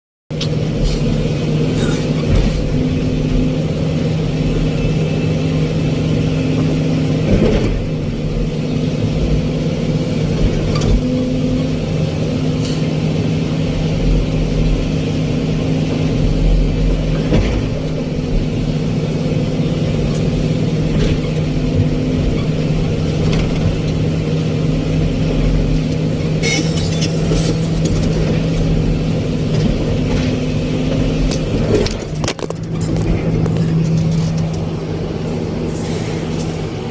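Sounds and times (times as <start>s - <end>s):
diesel engine running: 0.3s - 36.9s.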